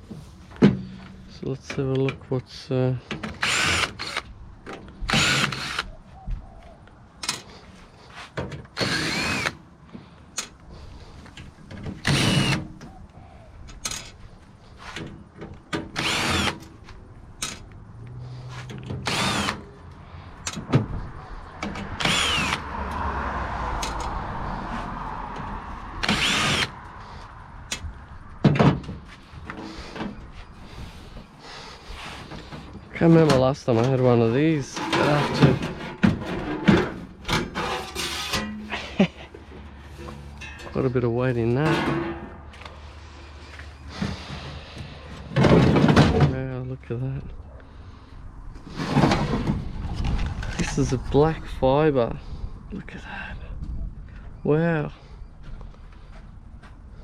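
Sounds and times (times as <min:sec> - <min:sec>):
cordless drill whirring: 0:03.4 - 0:04.3, 0:05.0 - 0:05.9, 0:08.8 - 0:09.6, 0:12.0 - 0:12.6, 0:16.0 - 0:16.7, 0:19.0 - 0:19.7, 0:22.0 - 0:22.7, 0:26.0 - 0:26.8
scraping sound: 0:34.5 - 0:38.8.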